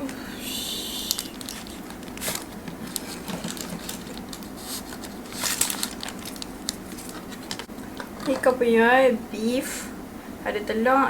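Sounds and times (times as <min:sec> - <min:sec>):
paper packaging rustling: 0:01.0 - 0:08.6.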